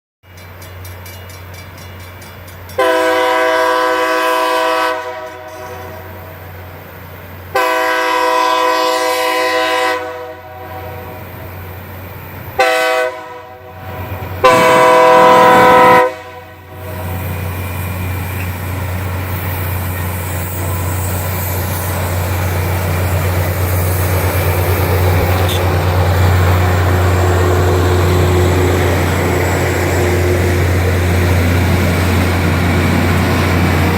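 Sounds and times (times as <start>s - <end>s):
train passing with rush and hum: 0.2s - 33.9s
multi-note air horn blasts: 2.8s - 5.9s, 7.5s - 11.1s, 12.6s - 13.8s, 14.4s - 17.0s, 25.4s - 25.7s.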